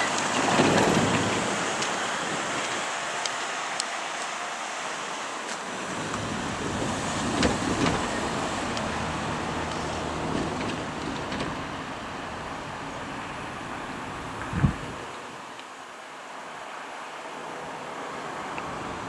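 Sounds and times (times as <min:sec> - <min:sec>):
vehicle passing: 0:00.0 - 0:14.2
road traffic noise: 0:00.0 - 0:19.0.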